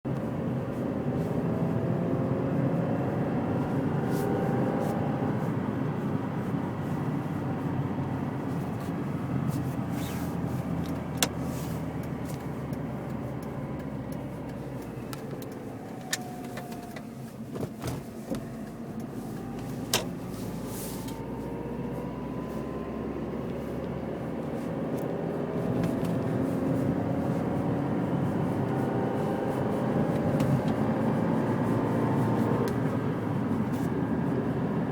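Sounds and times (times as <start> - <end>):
car driving with howling whine: 0.1 - 34.9.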